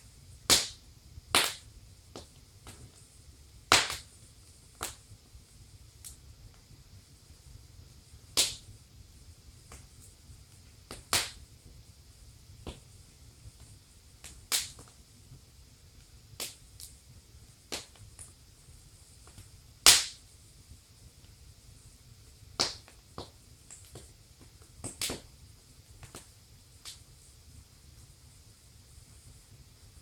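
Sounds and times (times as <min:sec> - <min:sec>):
wood fire crackling: 0:00.0 - 0:30.0
sharp pops of burning wood: 0:00.4 - 0:03.1, 0:03.7 - 0:05.1, 0:08.3 - 0:08.7, 0:09.6 - 0:11.5, 0:12.6 - 0:12.9, 0:13.6 - 0:15.0, 0:16.0 - 0:17.0, 0:17.6 - 0:18.4, 0:19.2 - 0:20.2, 0:22.5 - 0:25.4, 0:26.0 - 0:27.1.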